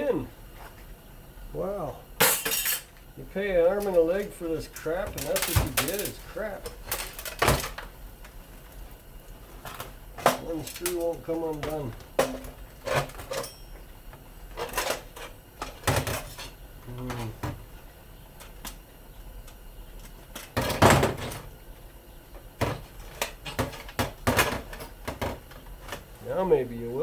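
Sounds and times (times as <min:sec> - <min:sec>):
metal clatter: 0:02.2 - 0:02.9, 0:04.8 - 0:07.8.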